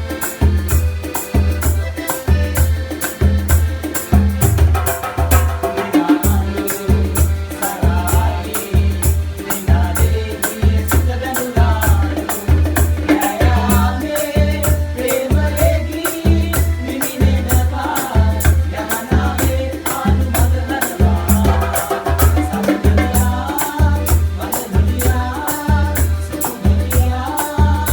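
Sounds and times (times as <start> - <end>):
calypso-style band music: 0.0 - 27.9.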